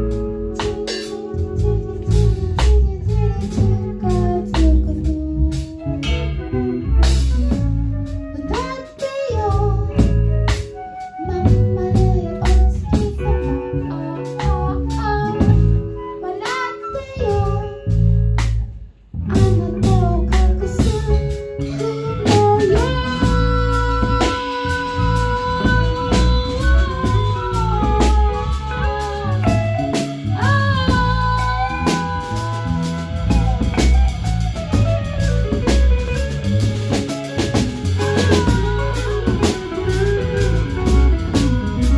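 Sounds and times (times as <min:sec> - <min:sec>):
person singing: 0:00.0 - 0:18.2, 0:19.2 - 0:41.9
live band playing: 0:00.0 - 0:41.9.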